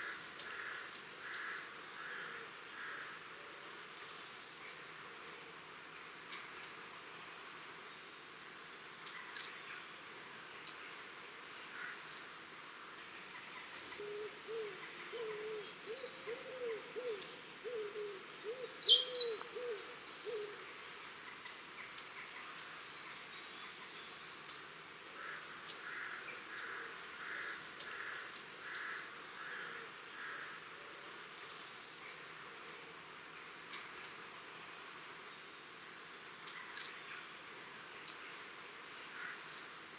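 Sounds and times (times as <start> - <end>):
low wavering bird hoot: 14.0 - 20.6
high thin bird calls: 18.5 - 19.6.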